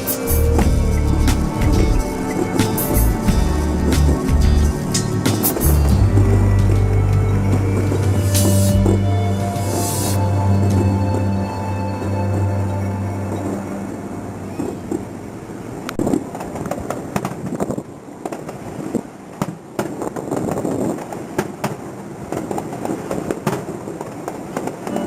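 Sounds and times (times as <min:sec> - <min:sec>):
fireworks popping and crackling: 0:16.0 - 0:24.9.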